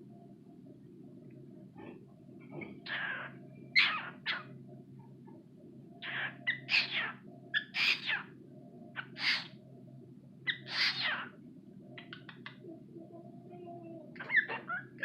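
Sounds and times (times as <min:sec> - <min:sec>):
low background hum: 0:00.0 - 0:15.0
cockatiel calling: 0:02.9 - 0:04.5, 0:06.0 - 0:08.3, 0:09.0 - 0:09.5, 0:10.5 - 0:11.3.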